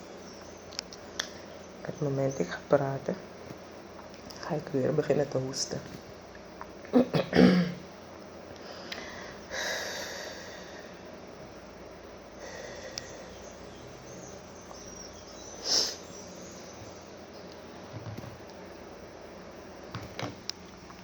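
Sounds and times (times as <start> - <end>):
person coughing: 6.9 - 7.8.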